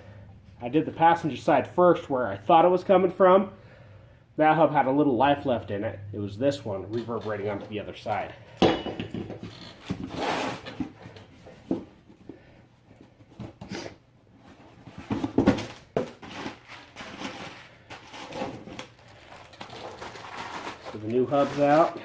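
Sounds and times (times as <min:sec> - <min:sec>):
handling knocks and clunks: 0:06.9 - 0:13.7, 0:14.5 - 0:16.5
box rustling: 0:14.4 - 0:22.0.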